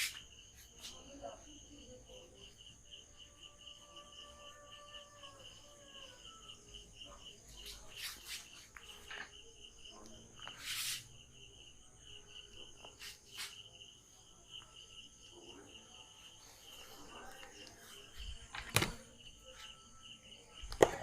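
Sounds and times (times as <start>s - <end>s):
insects chirping: 0.0s - 21.0s
short hiss: 10.6s - 11.1s.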